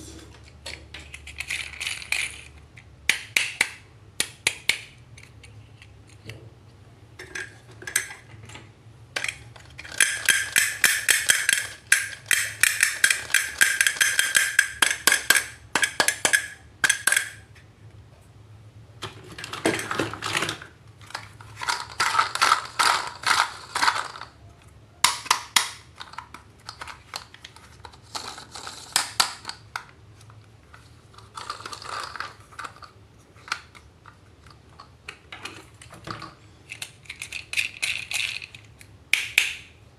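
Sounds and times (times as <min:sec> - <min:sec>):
plastic toys clicking and rattling: 0:00.4 - 0:06.4, 0:07.2 - 0:08.5, 0:09.1 - 0:17.6, 0:19.0 - 0:39.8.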